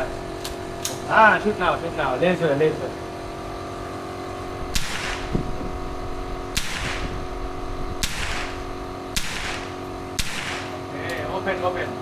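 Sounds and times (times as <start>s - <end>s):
steady background hum: 0.0s - 12.0s
echoing gunshots: 4.7s - 5.6s, 6.5s - 7.4s, 8.0s - 10.9s.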